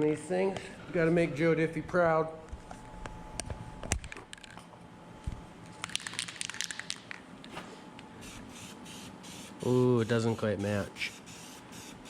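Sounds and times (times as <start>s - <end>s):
spray can rattling: 5.8s - 7.2s, 8.2s - 9.5s, 11.3s - 12.0s
spray can hissing: 8.2s - 12.0s.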